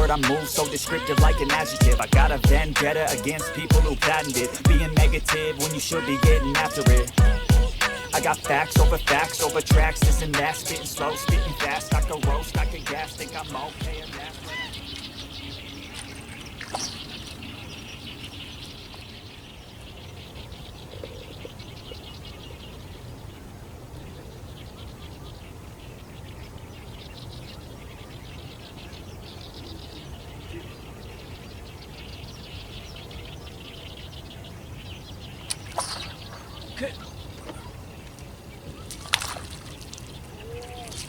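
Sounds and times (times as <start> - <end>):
steady low rumble: 0.0 - 0.5, 1.2 - 3.1, 4.6 - 5.5, 8.4 - 14.4
rapidly pulsing chirps: 0.0 - 18.8.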